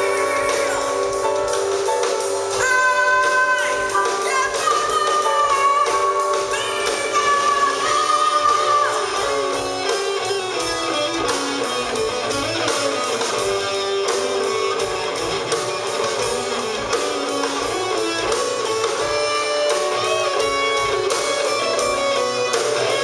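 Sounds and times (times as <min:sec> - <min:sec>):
bass guitar: 0:00.0 - 0:23.0
strummed rhythm guitar: 0:09.0 - 0:23.0.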